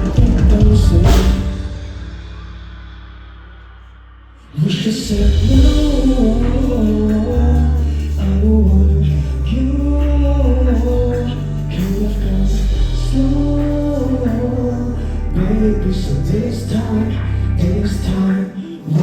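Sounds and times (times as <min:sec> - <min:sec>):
person singing: 0:00.0 - 0:02.4, 0:04.4 - 0:19.0
loud sustained bass: 0:00.0 - 0:18.3.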